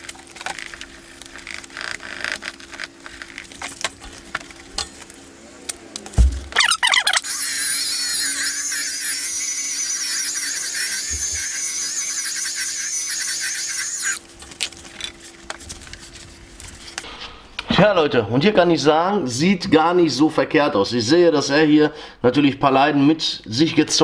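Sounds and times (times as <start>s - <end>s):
machine polisher whining: 6.6s - 14.2s.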